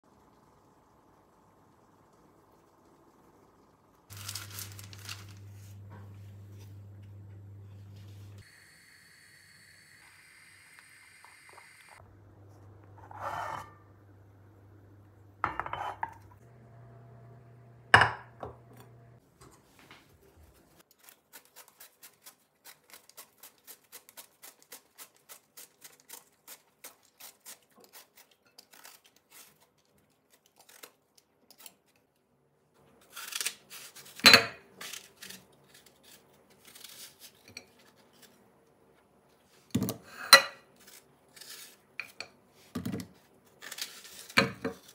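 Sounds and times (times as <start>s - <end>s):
utensil scraping bowl: 12.4s - 14.2s, 15.4s - 16.4s.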